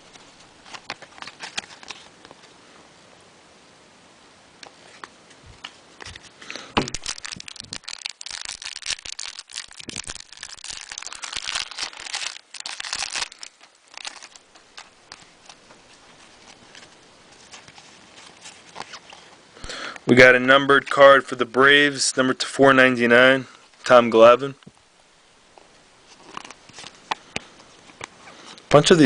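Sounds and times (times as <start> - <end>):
cards rustling: 0.0 - 2.5, 4.6 - 19.8, 26.1 - 29.0
wrapper tearing and crinkling: 0.1 - 2.1, 6.0 - 19.3, 26.1 - 27.2.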